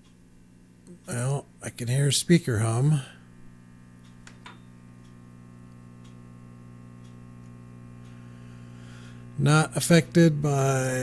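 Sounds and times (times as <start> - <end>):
faint light ticks: 0.0 - 0.2, 4.0 - 4.4, 5.0 - 6.3, 7.0 - 8.2
radio loudspeaker mains hum: 0.1 - 11.0.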